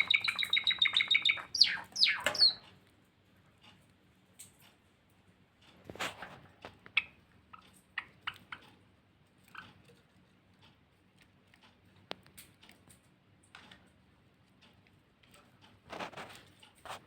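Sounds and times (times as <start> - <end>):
finches chirping faintly: 0.0 - 2.7
light clicks and rustles: 2.2 - 17.0.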